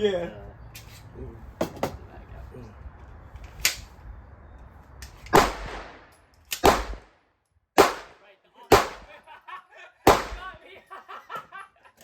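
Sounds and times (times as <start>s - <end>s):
handgun shots echoing: 5.3s - 7.1s, 7.8s - 9.1s, 10.1s - 10.6s.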